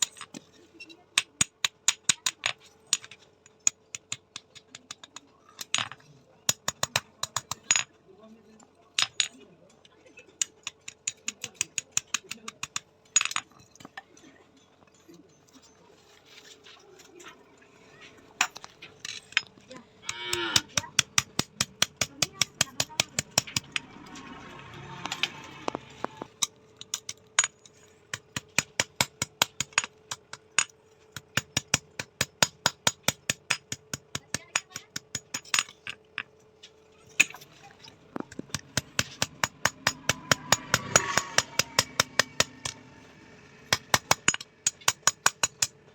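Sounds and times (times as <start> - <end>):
hammer striking steel on anvil: 38.4 - 42.8.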